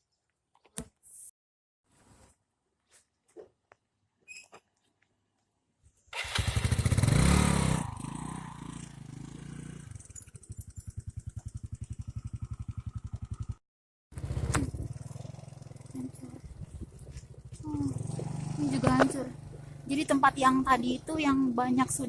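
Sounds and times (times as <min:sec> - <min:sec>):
motorcycle engine starting and idling: 0:06.1 - 0:13.6, 0:14.2 - 0:22.0.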